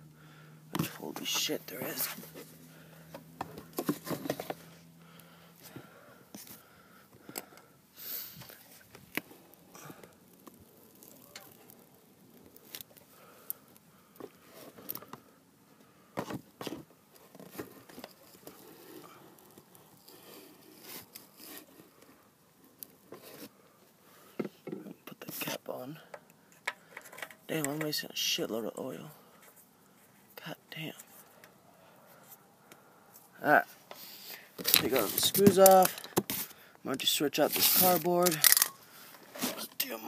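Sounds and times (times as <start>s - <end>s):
steady low hum: 0.0s - 20.8s.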